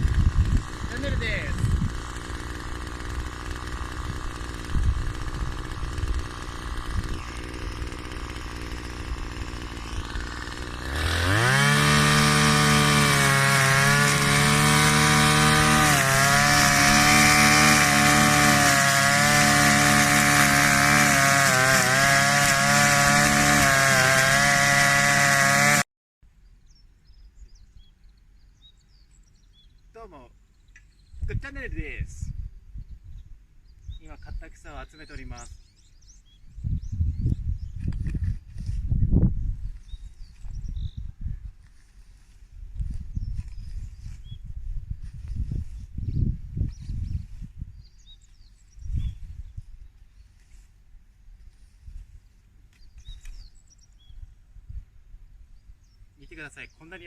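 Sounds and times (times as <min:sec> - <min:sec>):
brush cutter engine revving: 0:00.0 - 0:25.9.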